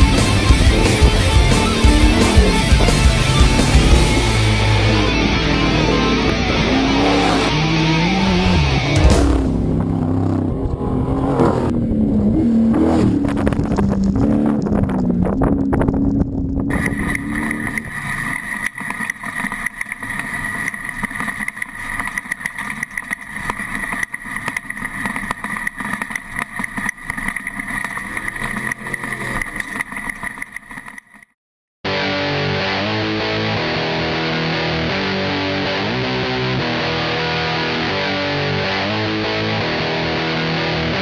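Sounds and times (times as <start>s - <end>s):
distorted electric guitar chords: 0.0s - 18.0s, 31.9s - 41.0s
steady whine: 0.0s - 29.6s
race truck engine: 0.0s - 30.0s.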